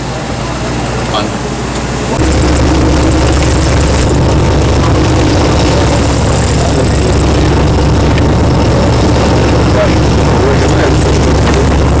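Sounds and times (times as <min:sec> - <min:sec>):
boat engine droning: 0:01.9 - 0:12.0.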